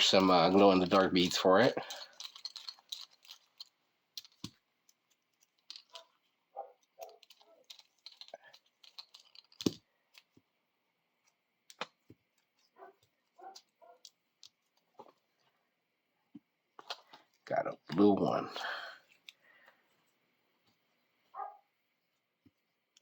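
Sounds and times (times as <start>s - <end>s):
plastic beads clicking: 0.0s - 10.5s, 11.2s - 14.9s.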